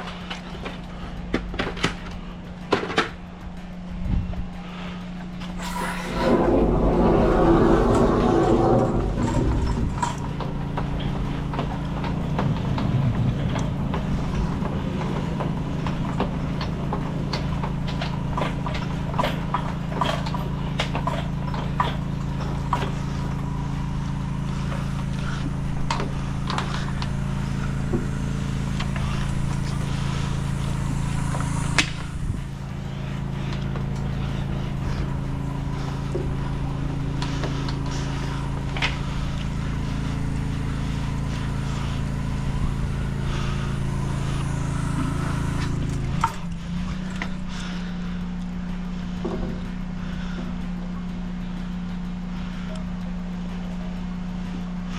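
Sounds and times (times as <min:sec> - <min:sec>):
motor running steadily: 0:00.0 - 0:54.9.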